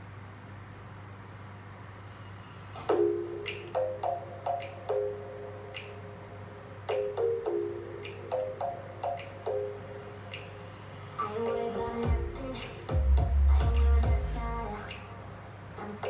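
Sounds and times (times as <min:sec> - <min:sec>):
low hum: 0:10.0 - 0:15.5.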